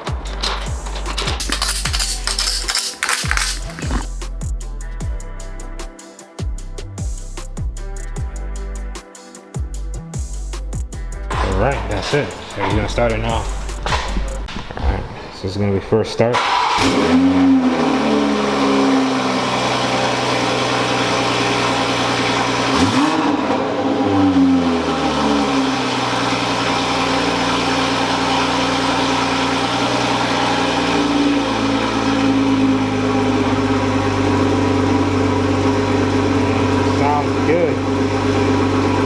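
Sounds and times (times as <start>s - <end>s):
car engine idling and revving: 11.1s - 14.8s, 16.4s - 39.0s.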